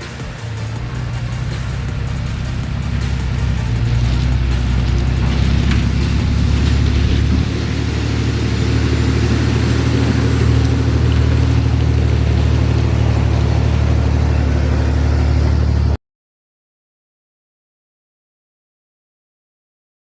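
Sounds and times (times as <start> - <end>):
vehicle engine running loudly: 0.0 - 16.0.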